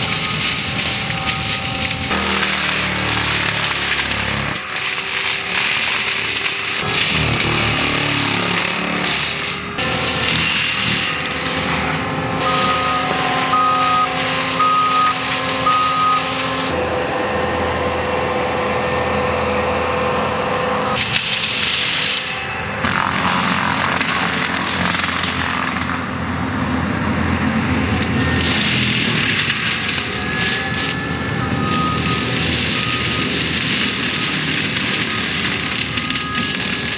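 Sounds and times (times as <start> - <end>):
track loader mulcher running: 0.0 - 36.9
backup alarm beeping: 12.4 - 16.4, 30.2 - 33.5.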